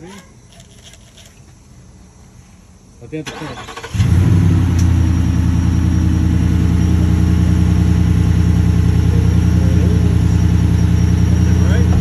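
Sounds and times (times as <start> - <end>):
pickup engine idling: 3.8 - 12.0.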